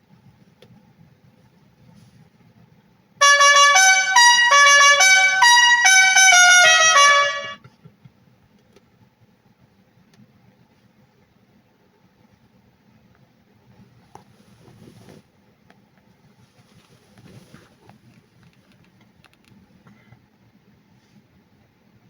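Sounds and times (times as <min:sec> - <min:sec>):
novelty horn tune through speaker: 0:03.2 - 0:07.6.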